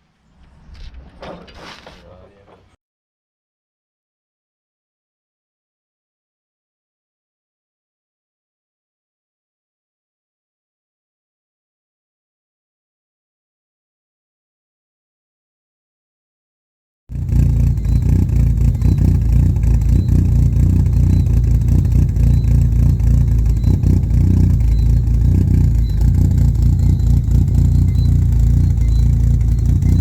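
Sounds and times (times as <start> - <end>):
car engine running: 17.1 - 30.0.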